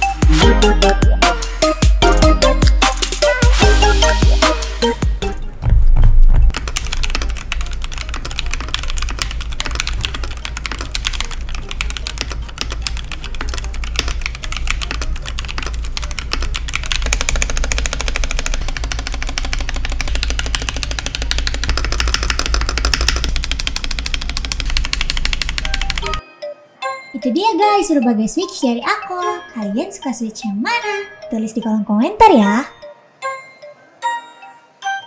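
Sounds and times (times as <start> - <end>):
mechanical keyboard typing: 6.4 - 26.2.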